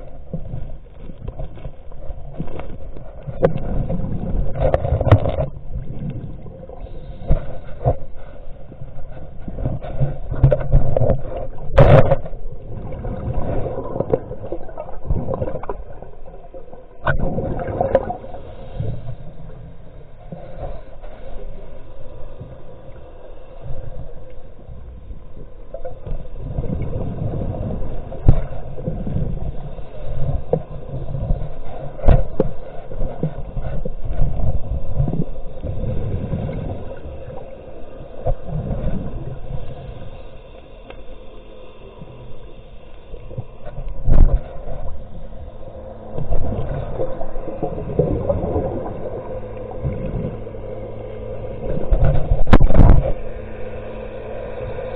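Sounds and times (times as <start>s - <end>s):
low rumble: 0.0s - 54.9s
muffled water sloshing and gurgling: 0.0s - 54.9s.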